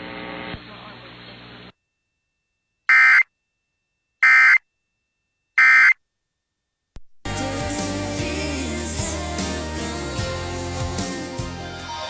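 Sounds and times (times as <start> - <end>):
digital data screech bursts: 2.9 - 3.2.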